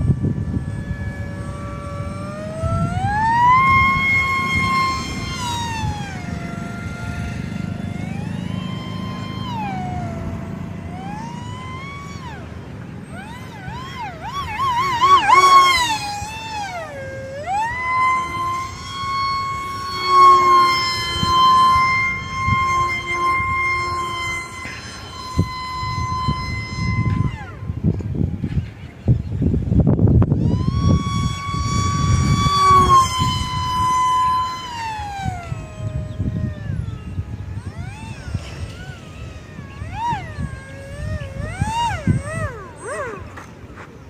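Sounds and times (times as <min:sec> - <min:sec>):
model plane motor whining: 0:00.0 - 0:44.0.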